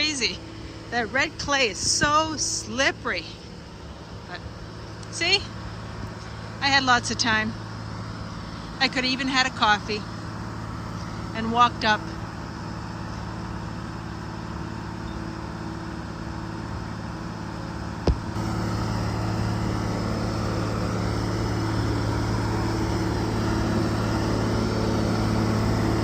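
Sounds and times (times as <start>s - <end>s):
engine humming: 0.0s - 26.0s.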